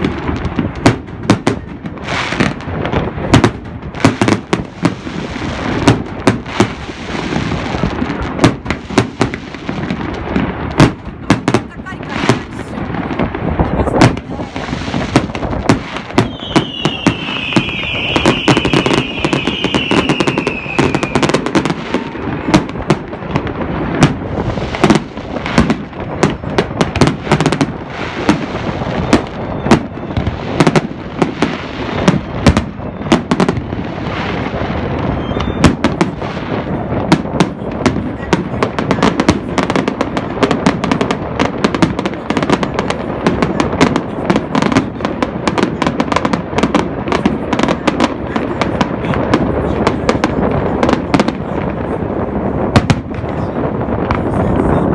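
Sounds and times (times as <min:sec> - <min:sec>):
crackling rumble: 0:00.0 - 0:54.9
fireworks bangs: 0:00.0 - 0:54.9.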